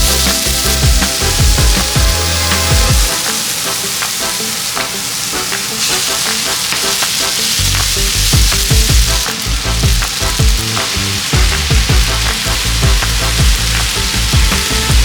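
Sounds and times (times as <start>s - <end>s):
background music with heavy bass: 0.0s - 4.8s, 5.4s - 15.0s
food sizzling in a pan: 0.0s - 15.0s.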